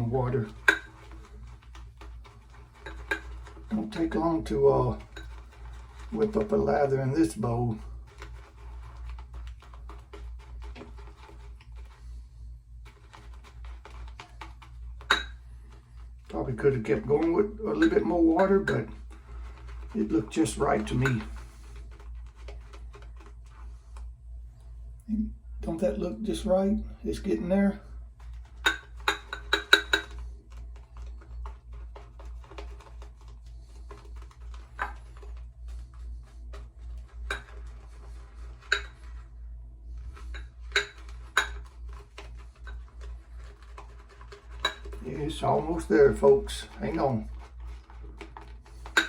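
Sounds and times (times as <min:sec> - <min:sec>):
shaving brush swishing lather: 0:00.0 - 0:15.0, 0:15.6 - 0:24.2, 0:30.4 - 0:48.9
low steady hum: 0:00.0 - 0:49.0
shaving brush whipping lather: 0:41.8 - 0:48.8.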